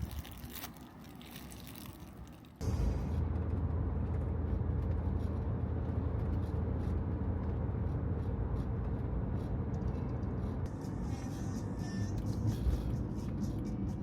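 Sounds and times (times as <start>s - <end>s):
vehicle engine and road rumble: 0.0s - 14.0s.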